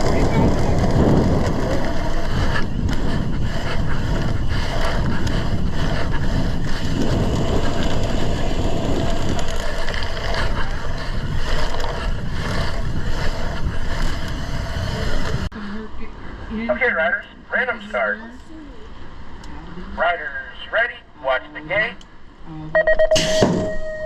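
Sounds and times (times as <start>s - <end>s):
wind buffeting microphone: 0.0s - 15.5s.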